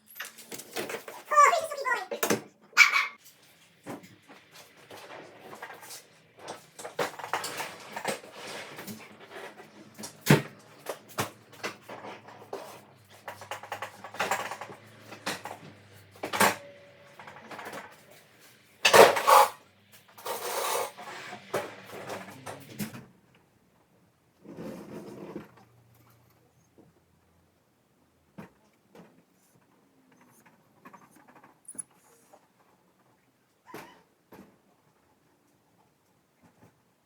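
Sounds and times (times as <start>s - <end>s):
household items clinking: 0.0s - 1.7s, 18.8s - 19.6s
scraping or rustling burst: 20.2s - 22.2s.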